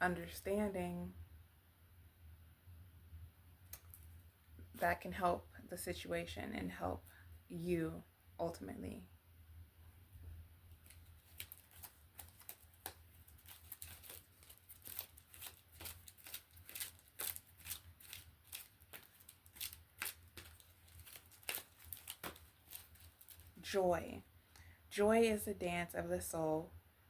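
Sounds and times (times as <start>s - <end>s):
cards being shuffled: 10.7s - 23.6s.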